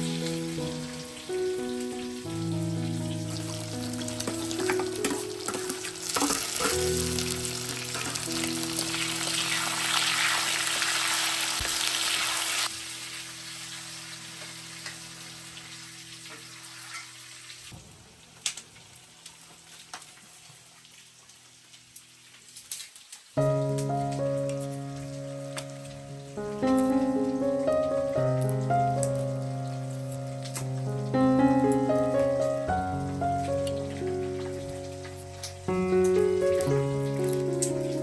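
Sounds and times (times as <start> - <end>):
background music sustained notes: 0.0 - 12.0, 23.4 - 38.0
crackles of frying: 0.0 - 38.0
food sizzling in frying: 0.0 - 38.0.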